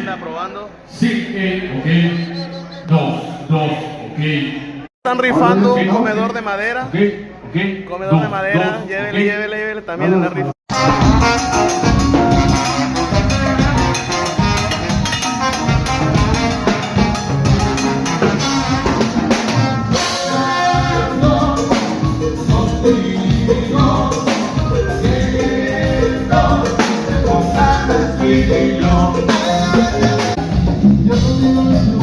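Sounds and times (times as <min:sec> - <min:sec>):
latin band playing live: 0:10.6 - 0:32.0
drum kit: 0:10.7 - 0:32.0
latin percussion: 0:10.7 - 0:32.0.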